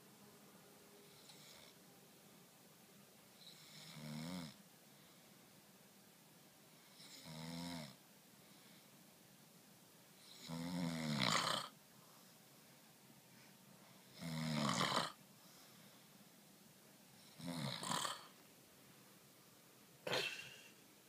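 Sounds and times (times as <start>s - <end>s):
rasping snores: 1.1s - 1.8s, 3.4s - 4.6s, 6.9s - 8.0s, 10.2s - 11.7s, 14.1s - 15.2s, 17.2s - 18.3s.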